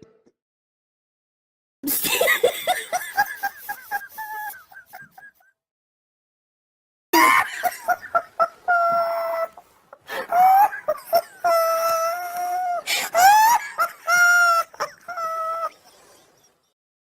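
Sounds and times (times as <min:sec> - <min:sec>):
person laughing loudly: 0:01.8 - 0:05.6, 0:07.2 - 0:16.2.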